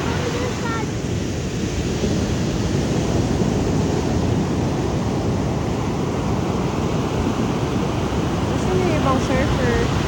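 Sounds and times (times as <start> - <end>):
ocean surf: 0.0 - 10.0
wind buffeting microphone: 0.0 - 10.0.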